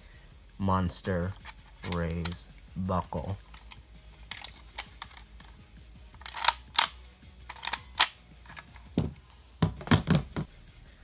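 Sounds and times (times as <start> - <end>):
hard plastic clicks: 3.4 - 5.3, 6.2 - 9.1.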